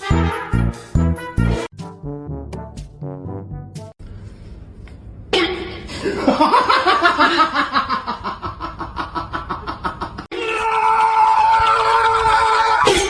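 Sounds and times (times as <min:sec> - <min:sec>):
hearty laughter: 0:06.0 - 0:10.3.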